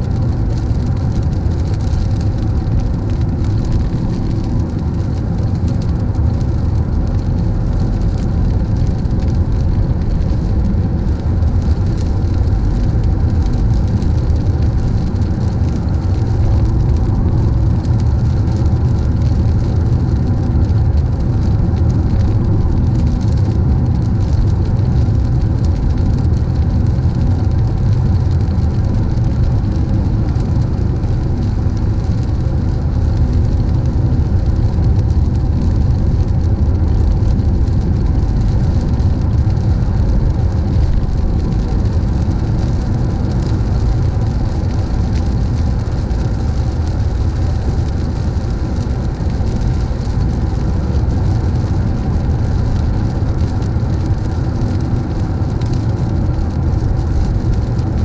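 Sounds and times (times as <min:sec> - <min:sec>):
car tyres on wet road: 0:00.0 - 0:58.0.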